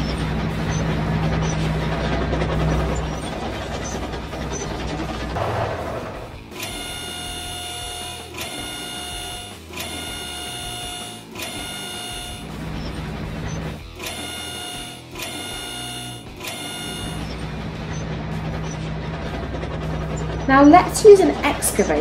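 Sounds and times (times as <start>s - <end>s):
low engine hum: 0.0s - 22.0s
high-pitched motor whine: 6.2s - 22.0s.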